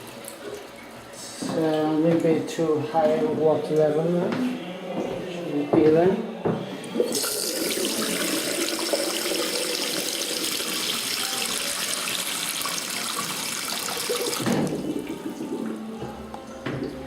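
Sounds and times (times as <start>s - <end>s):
toilet flushing water rushing: 6.8s - 16.0s.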